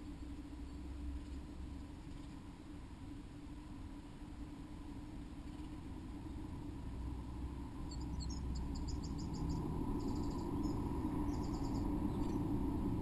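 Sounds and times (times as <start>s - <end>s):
low background rumble: 0.0s - 13.0s
small birds chirping: 7.7s - 13.0s.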